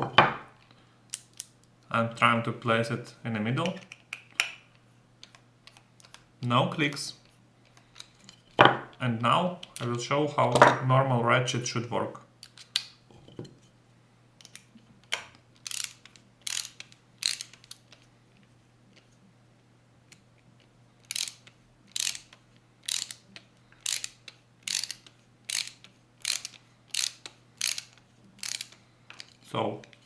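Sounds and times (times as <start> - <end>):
ratchet clicking: 15.6 - 17.8, 21.1 - 23.2, 23.8 - 28.8.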